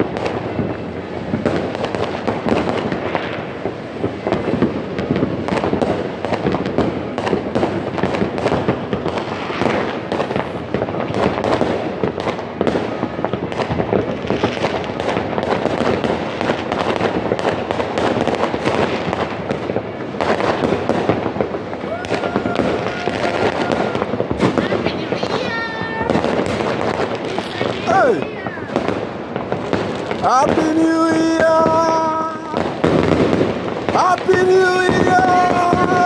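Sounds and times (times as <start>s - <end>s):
fireworks and firecrackers crackling: 0.0s - 36.0s.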